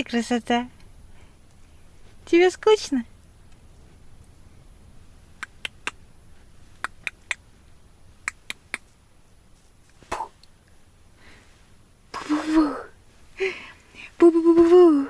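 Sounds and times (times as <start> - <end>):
sharp short clicks: 5.4 - 6.0, 8.2 - 9.0.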